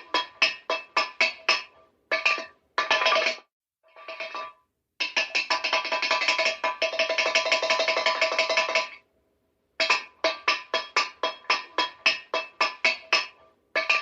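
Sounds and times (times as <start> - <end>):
metal cup clanging on bars: 9.8 - 14.0.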